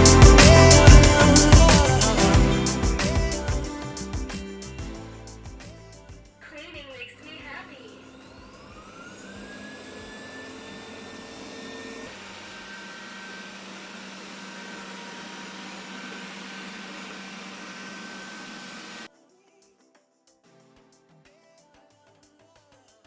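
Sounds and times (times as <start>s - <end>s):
robot vacuum motor whining: 7.5s - 19.1s.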